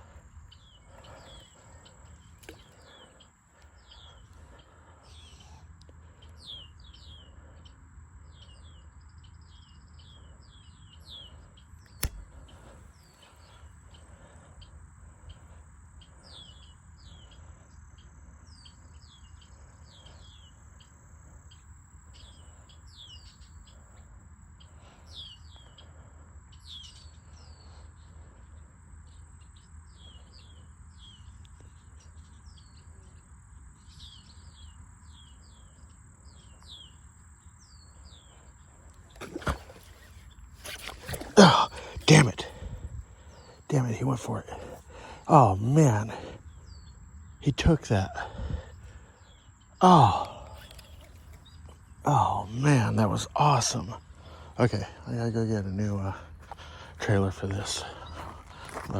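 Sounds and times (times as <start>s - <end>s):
small birds chirping: 0.0s - 58.9s
sharp click: 11.9s - 12.3s.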